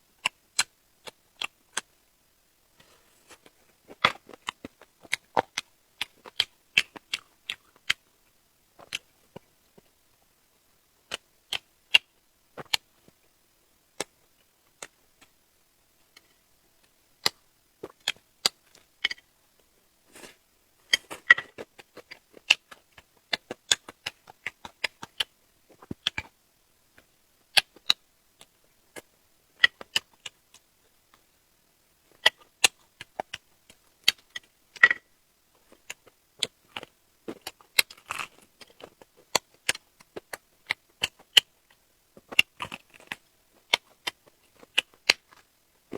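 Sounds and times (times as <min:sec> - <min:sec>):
crunchy chewing: 0:35.7 - 0:41.3, 0:42.2 - 0:45.5.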